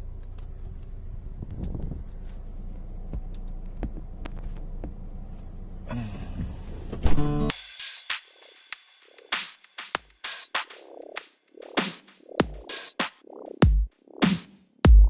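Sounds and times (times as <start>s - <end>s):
low mechanical hum: 0.0s - 7.4s.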